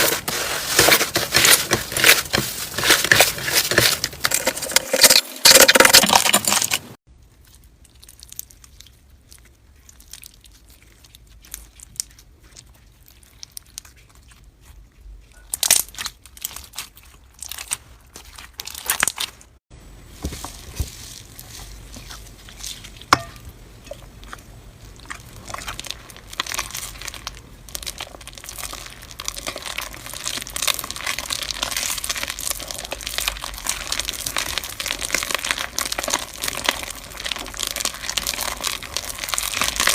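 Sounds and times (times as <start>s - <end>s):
slime crackling when squeezed: 24.9s - 39.9s.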